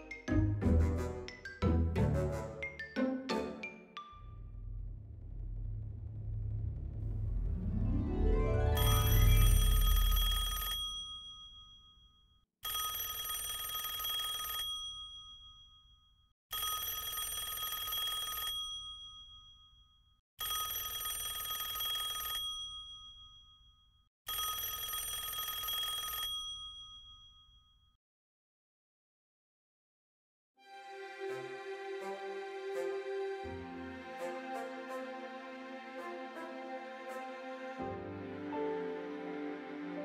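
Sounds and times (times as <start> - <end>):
telephone bell ringing: 8.8 - 11.6, 12.6 - 15.4, 16.5 - 19.2, 20.4 - 23.1, 24.3 - 27.1.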